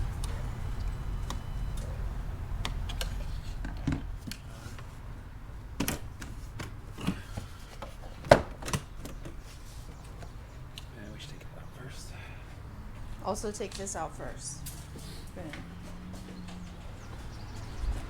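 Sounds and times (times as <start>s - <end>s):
low hum: 0.0s - 5.7s
clicks and knocks of plastic parts: 2.6s - 4.9s, 5.6s - 9.4s.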